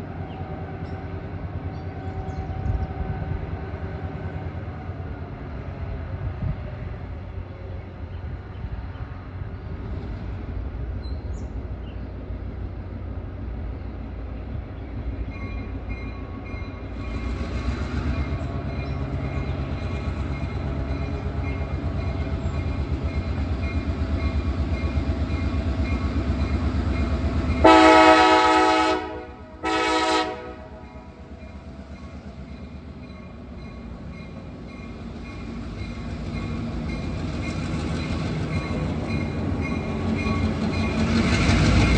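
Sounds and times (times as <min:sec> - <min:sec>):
locomotive engine rumble: 0:00.0 - 0:41.9
train air horn blasts: 0:27.6 - 0:31.0.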